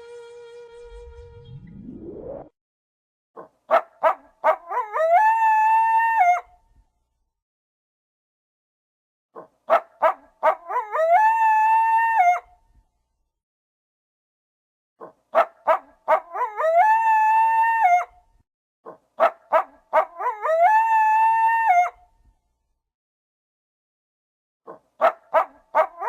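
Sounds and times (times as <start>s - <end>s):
coyote yipping and howling: 3.7s - 6.5s, 9.7s - 12.5s, 15.4s - 18.1s, 19.2s - 22.0s, 24.7s - 26.0s.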